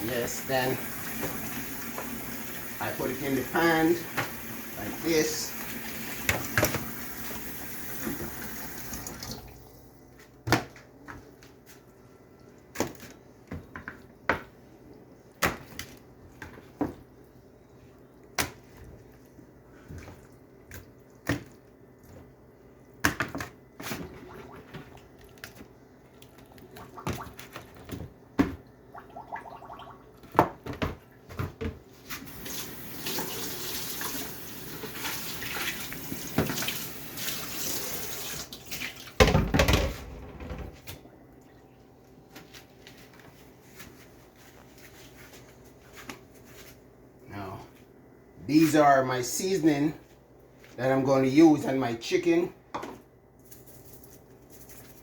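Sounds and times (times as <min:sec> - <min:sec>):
kitchen tap running: 0:00.0 - 0:09.8, 0:32.3 - 0:39.4.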